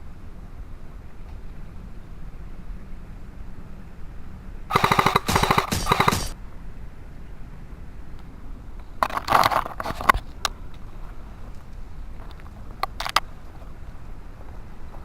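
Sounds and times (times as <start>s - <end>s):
airsoft gun automatic bursts: 4.7s - 6.4s.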